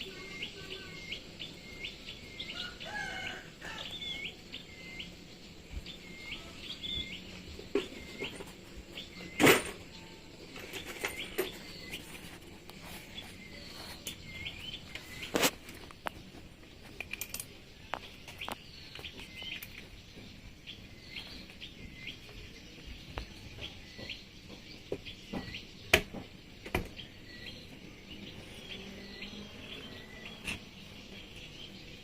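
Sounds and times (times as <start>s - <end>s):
small bird chirping: 0.0s - 32.0s.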